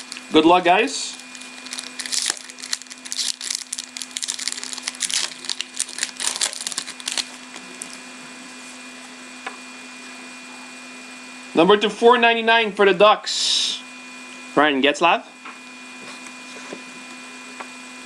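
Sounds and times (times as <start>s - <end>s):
packaging crinkling and tearing: 0.0s - 0.4s, 1.1s - 8.0s
faint steady hum: 0.0s - 18.0s.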